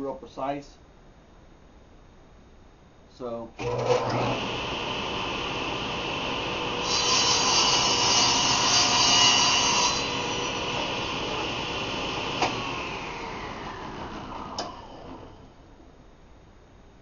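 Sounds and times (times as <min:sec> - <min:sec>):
table saw cutting wood: 0:03.6 - 0:15.6.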